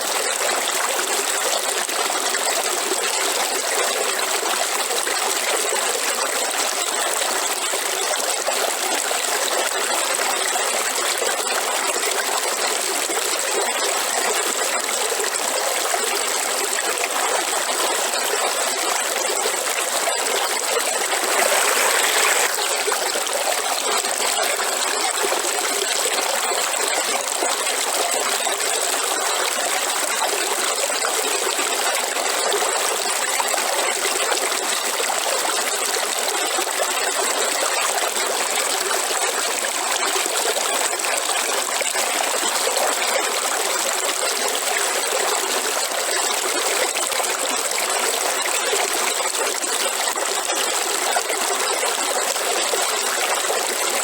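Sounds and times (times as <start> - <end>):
river water flowing: 13.6 - 47.0.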